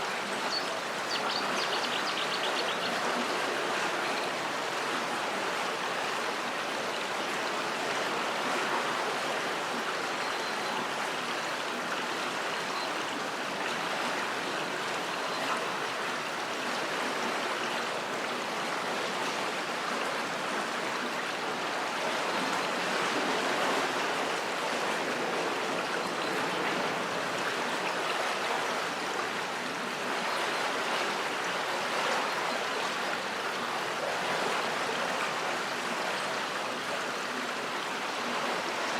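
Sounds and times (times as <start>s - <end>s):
river water rushing: 0.0s - 38.9s.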